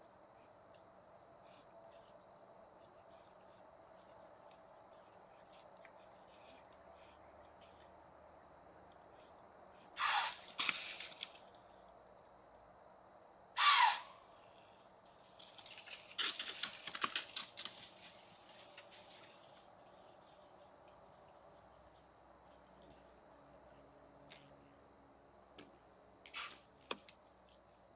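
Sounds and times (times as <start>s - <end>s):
harsh animal calls: 10.0s - 10.7s, 13.6s - 14.2s
rustling and crackling: 10.4s - 11.6s, 15.0s - 20.7s.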